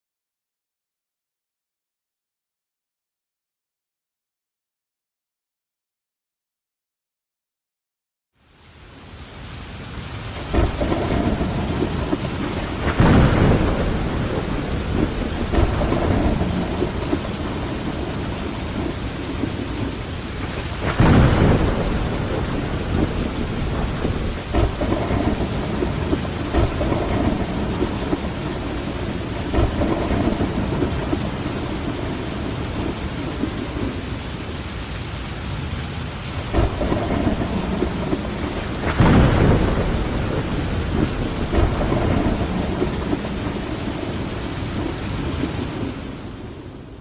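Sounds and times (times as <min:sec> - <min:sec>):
rain pattering on window glass: 0:09.4 - 0:46.8
thunder rumbling: 0:10.2 - 0:47.0.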